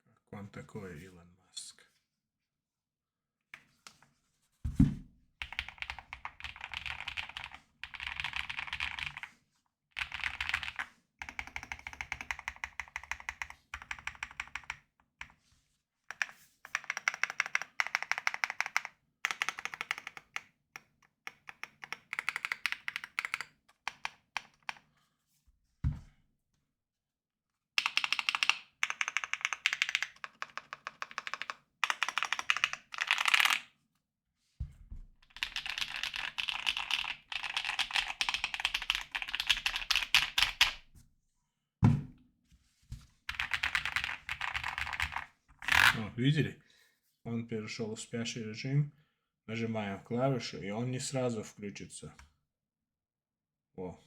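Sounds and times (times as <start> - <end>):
mechanical keyboard typing: 5.4 - 9.3, 10.0 - 14.8, 16.1 - 24.8, 27.8 - 33.6, 35.3 - 40.8, 43.3 - 45.9.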